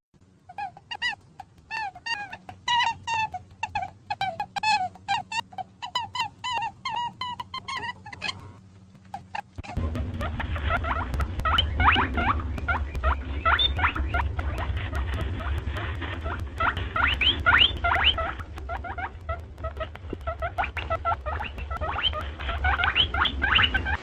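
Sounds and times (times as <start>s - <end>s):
steady low hum: 0.2s - 24.0s
rabbits squeaking: 0.4s - 24.0s
clicks: 8.3s - 24.0s.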